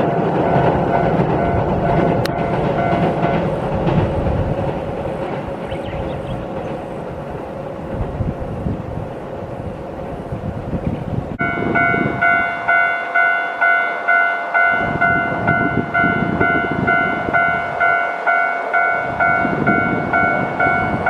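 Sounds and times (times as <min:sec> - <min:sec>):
train rumbling over steel bridge: 0:00.0 - 0:21.0
level crossing warning bell: 0:00.5 - 0:03.8, 0:11.4 - 0:21.0.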